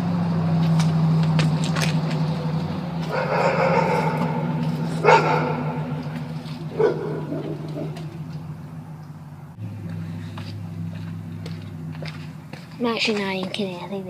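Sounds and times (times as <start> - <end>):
steady low hum: 0.0 - 14.0
dog barking: 3.1 - 8.1.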